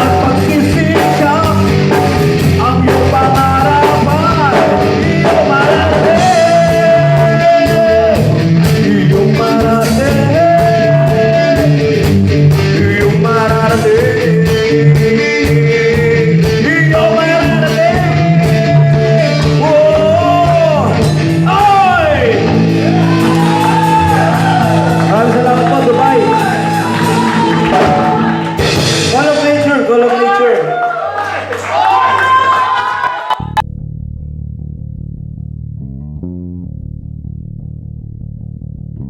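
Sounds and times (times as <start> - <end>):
electric guitars: 0.0 - 29.9
bass guitar: 0.0 - 30.1, 31.1 - 39.0
live rock band playing: 0.0 - 30.2
drums: 0.0 - 33.6.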